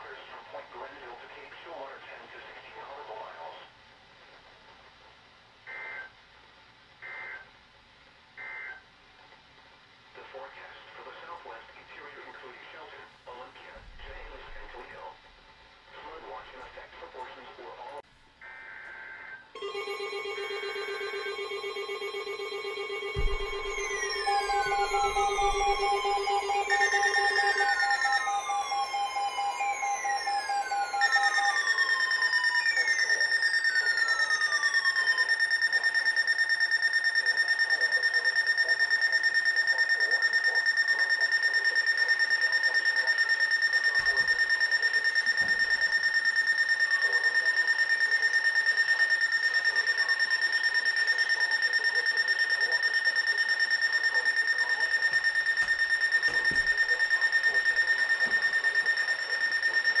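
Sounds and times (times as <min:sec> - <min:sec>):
pulsing emergency alarm tone: 0:18.5 - 1:00.0
falling pitch sweeps: 0:19.6 - 0:33.2.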